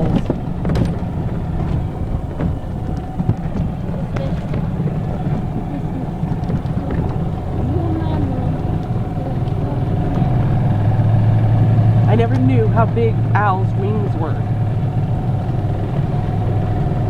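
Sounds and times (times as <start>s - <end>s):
golf cart motor running: 0.0s - 17.0s
knocks and rattles: 0.0s - 17.0s.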